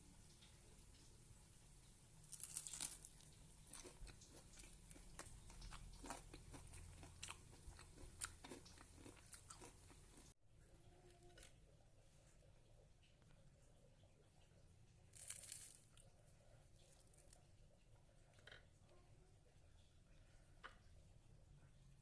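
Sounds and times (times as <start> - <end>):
crisp food crunching: 2.2 - 10.3, 15.1 - 16.1.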